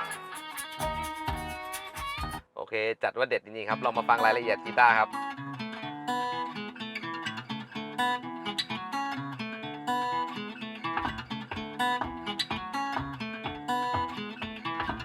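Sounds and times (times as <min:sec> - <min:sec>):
acoustic guitar music: 0:00.0 - 0:02.5, 0:03.6 - 0:15.0
bass line: 0:00.8 - 0:01.6.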